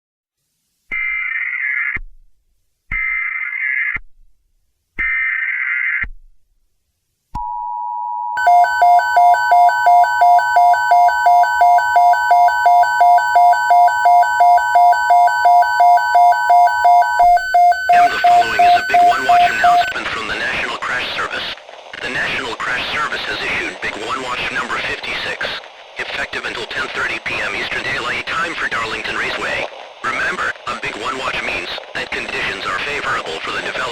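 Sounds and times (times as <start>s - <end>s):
two-tone attention signal: 7.4s - 19.9s
pulsing beeping alarm tone: 8.4s - 19.9s
screeching data bursts: 8.4s - 20.0s
loud noisy hiss: 19.5s - 33.9s.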